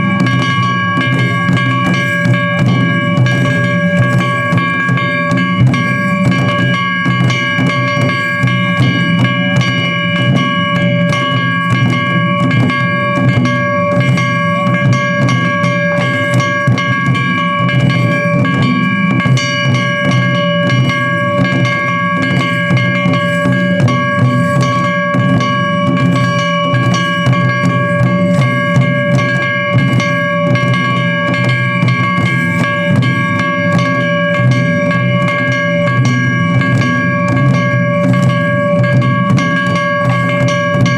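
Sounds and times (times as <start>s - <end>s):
drums beating rapidly: 0.0s - 40.9s
steady held tone: 0.0s - 40.9s.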